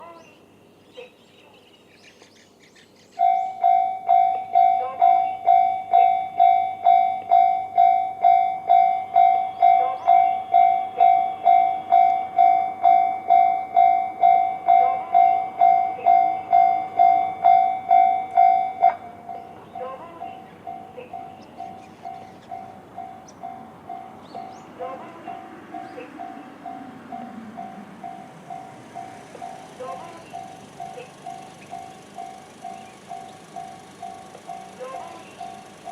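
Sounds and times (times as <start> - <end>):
level crossing warning alarm: 3.2 - 35.9.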